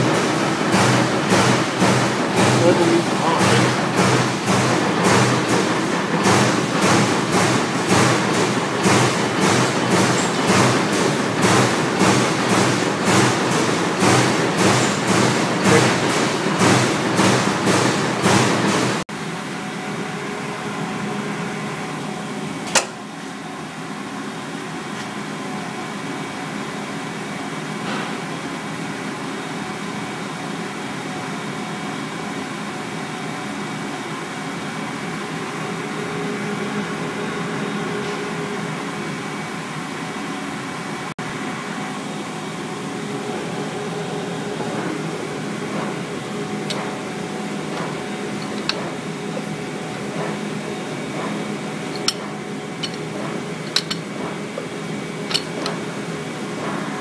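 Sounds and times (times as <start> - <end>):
steady machine hum: 0.0 - 26.2, 34.8 - 57.0
sharp machine click: 55.3 - 55.8.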